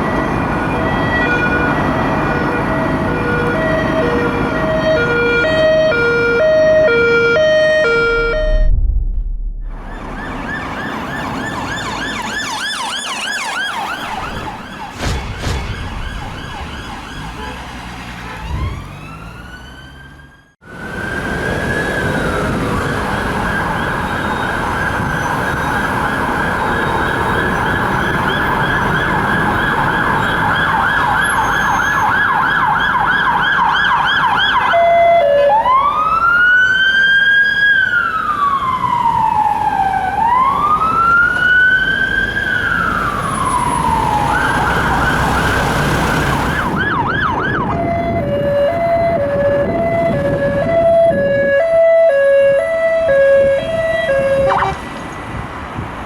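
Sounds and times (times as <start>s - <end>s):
siren yelping: 0.0s - 8.9s, 9.7s - 15.0s, 27.2s - 55.4s
siren wailing: 0.0s - 15.1s, 18.5s - 55.4s.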